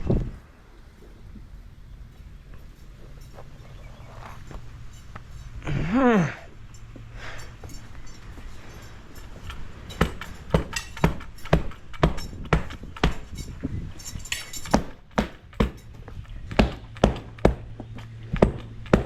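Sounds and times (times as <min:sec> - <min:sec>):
stamping mats knocking on concrete: 0:10.0 - 0:13.4, 0:14.7 - 0:19.0.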